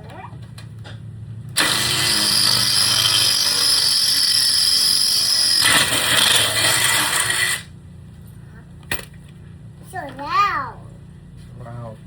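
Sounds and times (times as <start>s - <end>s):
power tool running: 1.5s - 7.7s.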